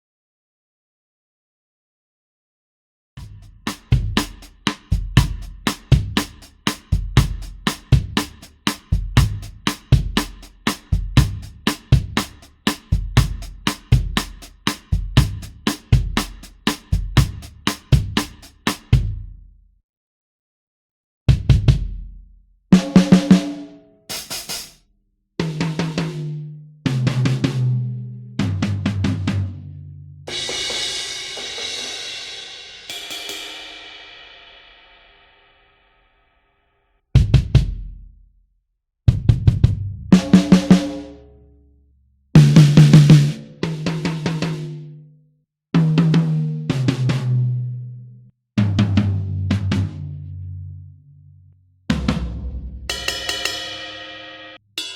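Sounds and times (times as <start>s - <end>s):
acoustic drum kit: 3.2s - 19.4s, 21.3s - 24.8s, 25.4s - 29.6s, 30.3s - 35.0s, 37.2s - 38.0s, 39.1s - 41.2s, 42.4s - 44.9s, 45.8s - 47.6s, 48.6s - 50.3s, 51.9s - 54.9s.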